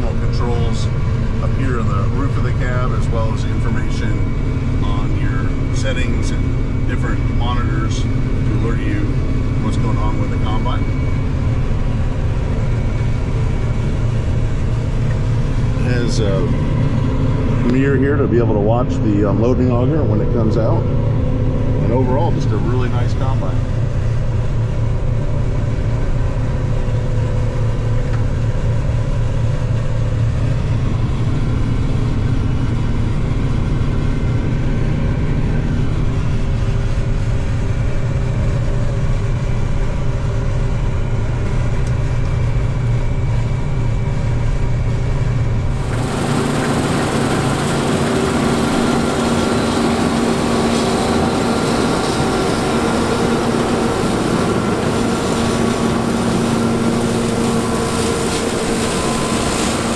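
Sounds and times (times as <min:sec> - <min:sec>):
combine harvester running: 0:00.0 - 0:59.9
machine whining tones: 0:43.3 - 0:59.9.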